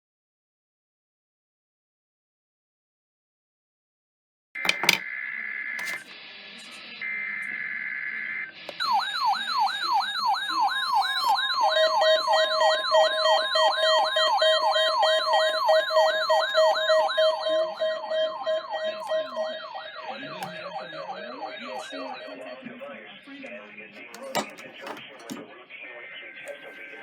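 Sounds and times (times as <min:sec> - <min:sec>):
electronic siren yelping: 0:04.6 - 0:22.8
steady held tones: 0:11.5 - 0:23.4.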